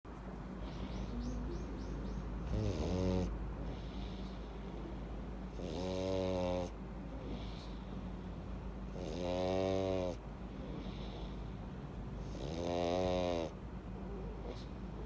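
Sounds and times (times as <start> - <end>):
dog snoring: 2.4 - 8.3, 8.9 - 11.5, 12.2 - 15.0.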